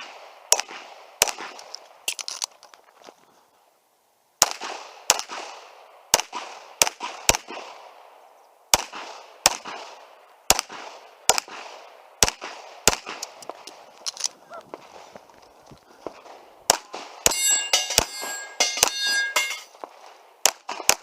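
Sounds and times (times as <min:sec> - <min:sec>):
handgun shots with echo: 0:10.5 - 0:13.8.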